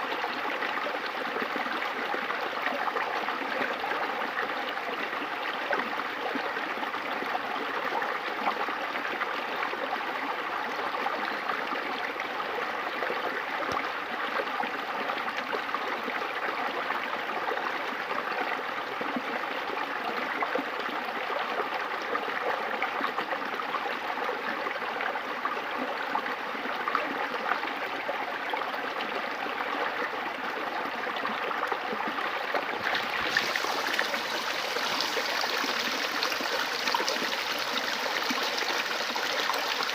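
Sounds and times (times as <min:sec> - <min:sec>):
river water flowing: 0:24.0 - 0:39.9.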